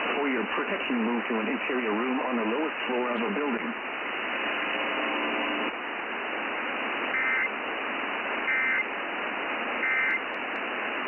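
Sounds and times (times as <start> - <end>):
radio static hiss: 0.0 - 11.0
faint steady tone: 6.9 - 7.6, 8.3 - 8.9, 9.7 - 10.4
harsh buzzing data bursts: 7.1 - 7.5, 8.5 - 8.9, 9.8 - 10.2.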